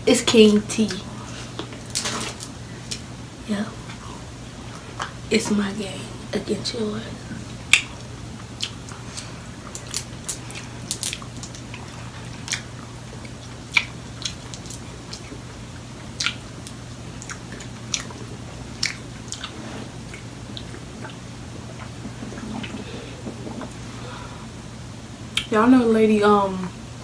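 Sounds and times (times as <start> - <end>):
steady low hum: 0.0 - 27.0
chewing with mouth clicks: 7.5 - 23.9.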